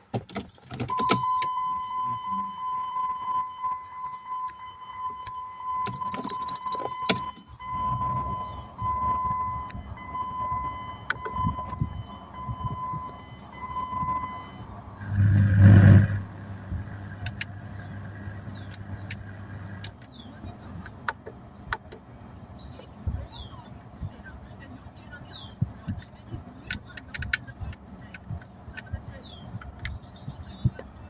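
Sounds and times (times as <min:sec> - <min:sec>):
keys jangling: 0:00.2 - 0:01.6, 0:04.5 - 0:07.6
dashboard warning chime dinging: 0:00.2 - 0:21.0.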